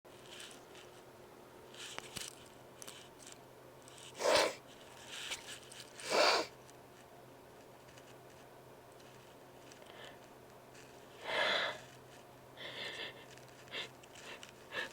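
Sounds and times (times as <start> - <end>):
person sneezing: 4.2 - 4.6, 6.0 - 6.5.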